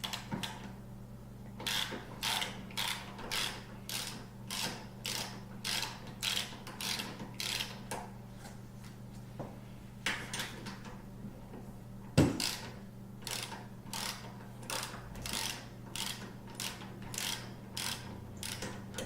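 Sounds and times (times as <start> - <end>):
socket ratchet clicking: 12.4 - 19.0.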